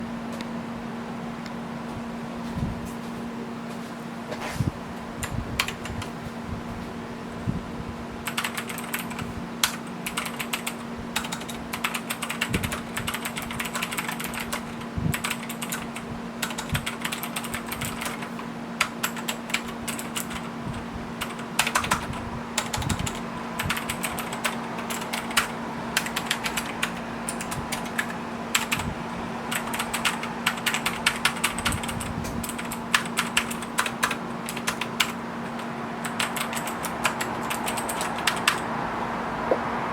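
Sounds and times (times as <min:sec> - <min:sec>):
mechanical keyboard typing clicks: 0:05.2 - 0:06.1, 0:08.2 - 0:20.5, 0:21.2 - 0:28.9, 0:29.5 - 0:38.6.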